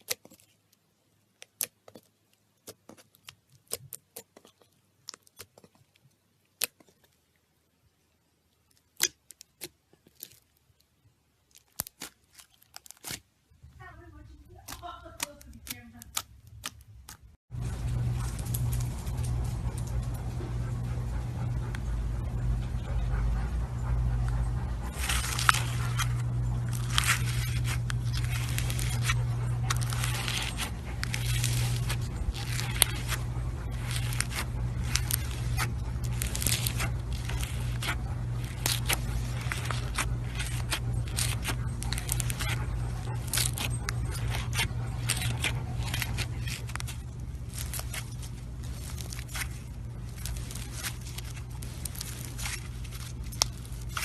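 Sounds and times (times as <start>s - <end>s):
slime crackling and popping: 0.0s - 7.3s, 8.5s - 13.5s, 14.2s - 17.4s, 24.9s - 54.0s
steady low hum: 16.9s - 54.0s.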